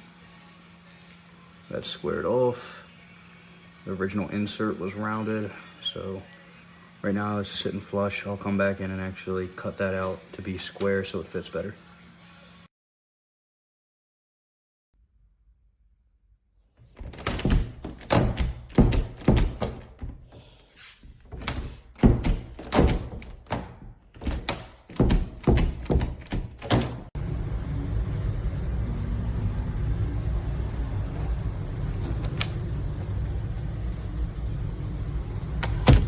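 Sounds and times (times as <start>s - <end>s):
steady low noise: 27.2s - 36.0s.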